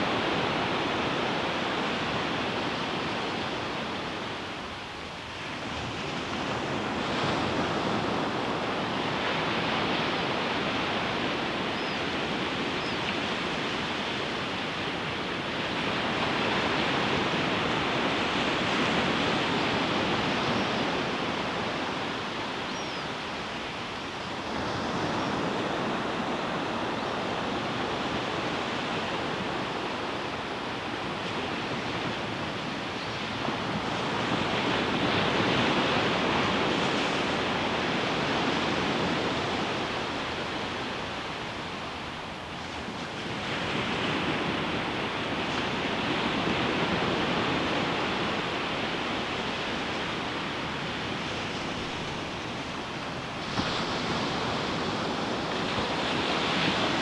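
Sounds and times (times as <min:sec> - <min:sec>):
ocean waves breaking on beach: 0:23.3 - 0:57.0.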